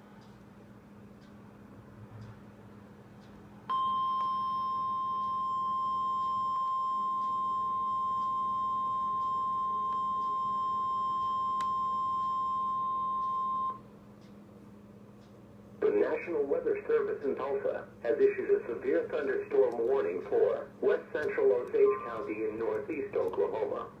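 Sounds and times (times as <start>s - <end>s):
faint low hum: 0.0s - 24.0s
steady alarm tone: 3.7s - 13.8s.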